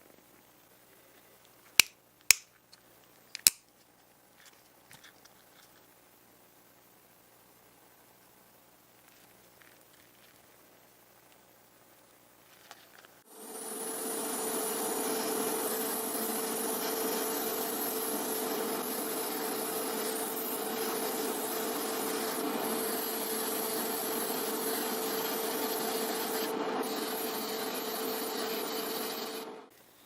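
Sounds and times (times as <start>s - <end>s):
small electric tool humming: 13.3s - 29.7s.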